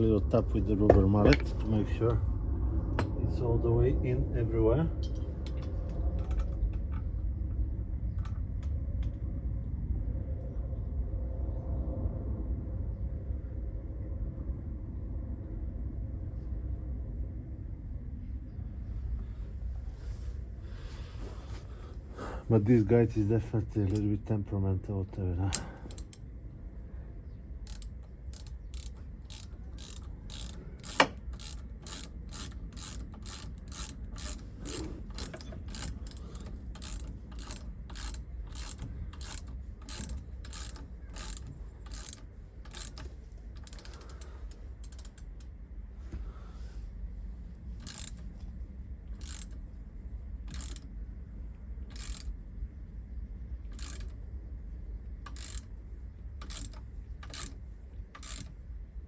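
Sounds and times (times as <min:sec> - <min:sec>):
ratchet wrench clicking: 0:25.4 - 0:26.2, 0:27.7 - 0:45.5, 0:47.8 - 0:48.3, 0:49.2 - 0:49.6, 0:50.5 - 0:50.9, 0:51.9 - 0:52.3, 0:53.7 - 0:54.2, 0:55.2 - 0:55.7, 0:56.4 - 0:58.5.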